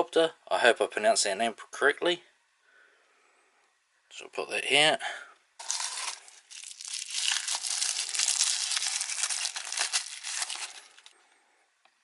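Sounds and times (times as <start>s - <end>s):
plastic packaging crinkling: 5.6s - 11.1s.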